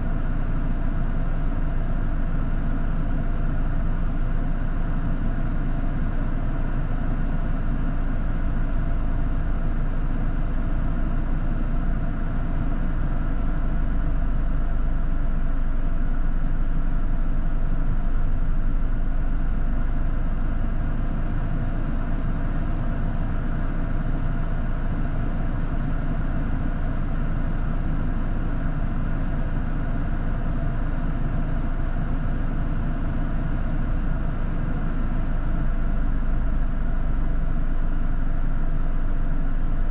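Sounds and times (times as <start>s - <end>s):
vehicle engine running: 8.8s - 39.9s.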